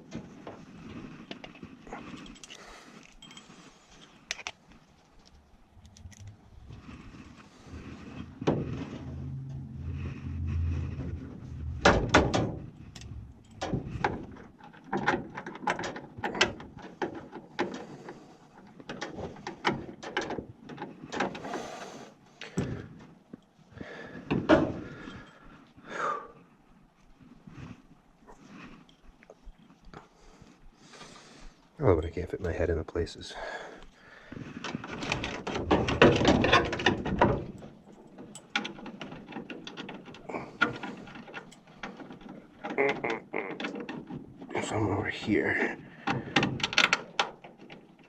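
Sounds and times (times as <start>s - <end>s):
tools and parts clicking and knocking: 0.0s - 6.8s, 11.5s - 21.5s, 34.6s - 44.5s, 46.0s - 48.0s
low hum: 5.4s - 14.5s.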